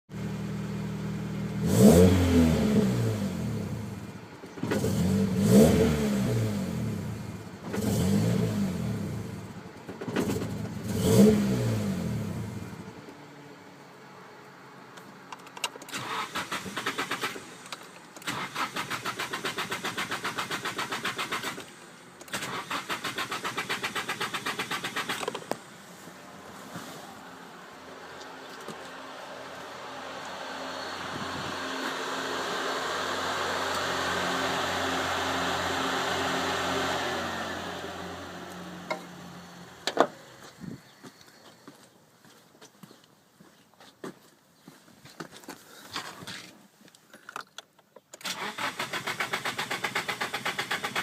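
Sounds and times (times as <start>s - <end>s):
car engine revving: 0.2s - 13.0s, 18.2s - 40.5s
starter motor cranking: 15.8s - 25.5s, 48.2s - 51.0s.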